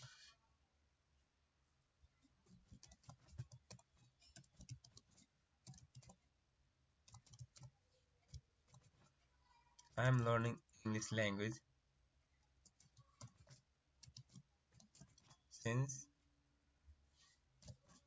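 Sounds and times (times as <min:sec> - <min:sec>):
typing on a keyboard: 0:02.5 - 0:06.2, 0:07.0 - 0:09.2, 0:09.8 - 0:10.0, 0:12.6 - 0:15.4, 0:17.6 - 0:18.0.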